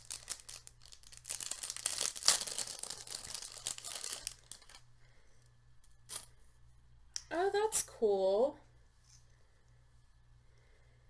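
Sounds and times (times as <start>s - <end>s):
hands unwrapping crinkly packaging: 0.0s - 4.8s.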